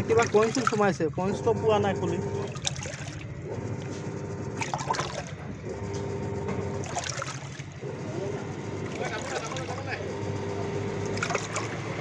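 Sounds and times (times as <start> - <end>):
washing machine motor humming: 0.0 - 12.0
water sloshing in tub: 0.0 - 12.0.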